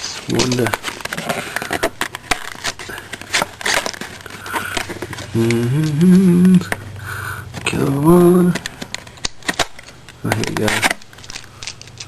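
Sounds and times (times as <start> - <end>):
packaging crinkling and snapping: 0.1 - 6.8, 7.5 - 12.0
man humming: 5.2 - 8.5.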